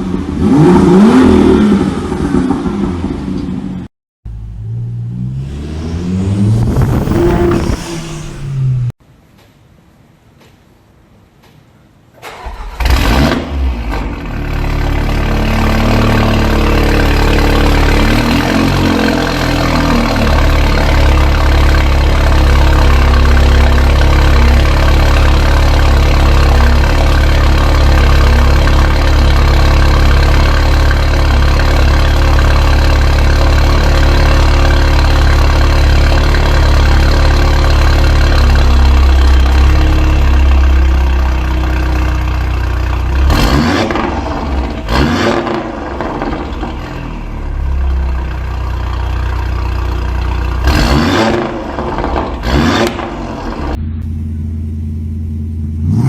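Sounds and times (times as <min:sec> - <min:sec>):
car engine idling: 0:04.3 - 0:09.0, 0:14.2 - 0:56.0
car engine revving: 0:04.3 - 0:09.0, 0:12.5 - 0:48.3, 0:50.4 - 0:54.2, 0:55.8 - 0:56.0.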